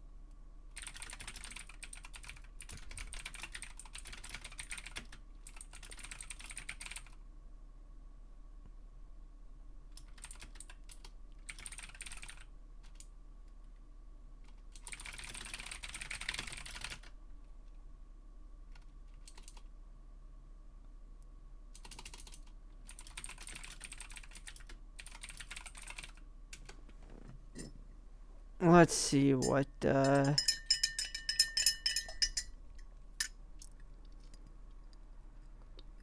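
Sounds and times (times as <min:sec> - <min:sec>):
faint electrical hum: 0:00.0 - 0:36.0
typing on computer keyboard: 0:00.8 - 0:07.2, 0:09.9 - 0:13.1, 0:14.4 - 0:17.1, 0:18.7 - 0:19.7, 0:21.8 - 0:26.8.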